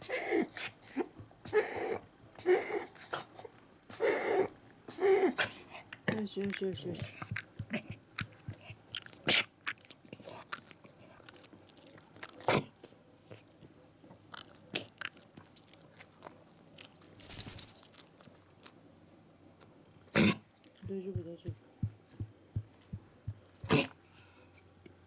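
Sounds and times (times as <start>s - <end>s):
dog snorting: 0.1s - 5.8s, 20.1s - 20.4s, 22.7s - 24.0s.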